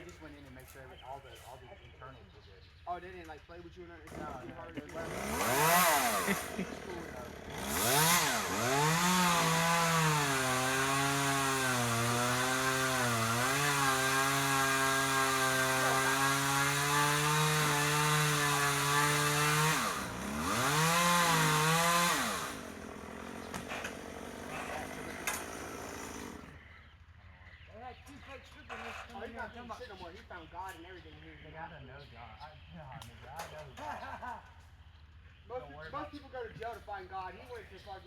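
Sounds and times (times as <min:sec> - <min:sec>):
chainsaw cutting wood: 0:04.1 - 0:26.6.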